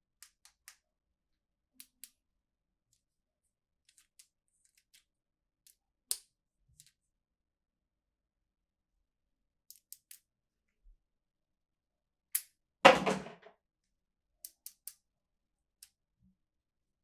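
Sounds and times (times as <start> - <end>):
knock with brief rattle: 12.9 - 13.5.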